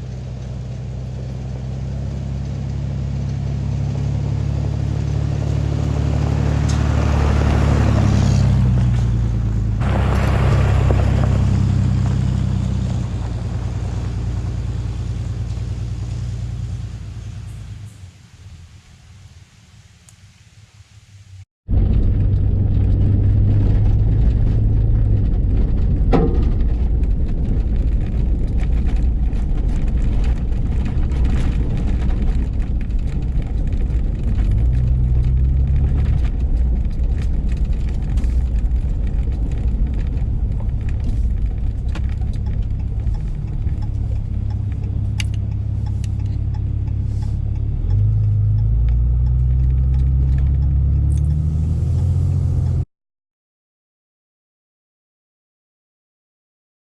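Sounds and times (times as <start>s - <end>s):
truck engine running: 0.0s - 18.1s, 21.7s - 52.8s
road noise: 0.0s - 52.9s.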